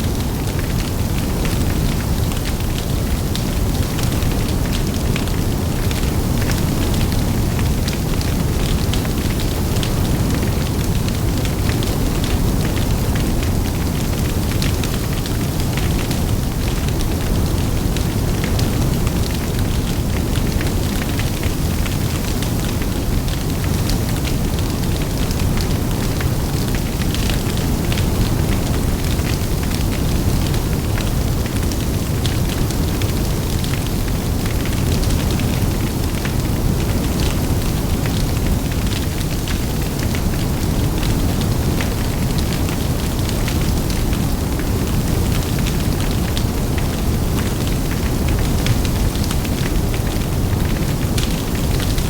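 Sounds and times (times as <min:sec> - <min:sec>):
fire crackling and popping: 0:00.1 - 0:52.0
bonfire flames roaring: 0:20.1 - 0:51.8.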